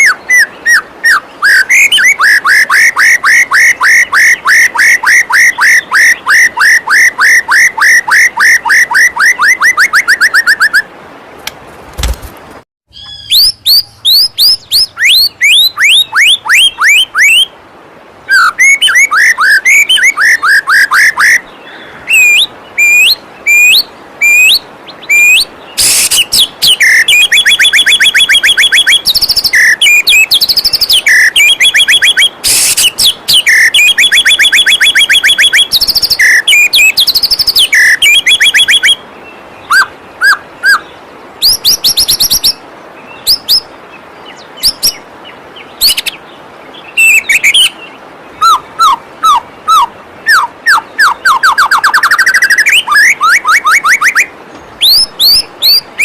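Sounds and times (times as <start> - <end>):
bird singing whistled trills: 0.0 - 10.8, 12.9 - 17.5, 18.2 - 43.7, 44.3 - 45.0, 45.8 - 46.2, 46.8 - 56.0
waterfall water rushing: 14.9 - 56.0.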